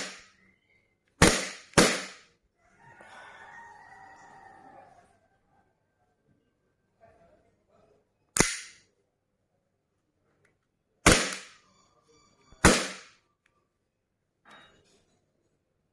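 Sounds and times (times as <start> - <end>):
air pistol shots: 0.0 - 0.3, 1.2 - 2.3, 8.4 - 8.8, 11.0 - 11.6, 12.6 - 13.2
faint ringing: 14.2 - 15.7.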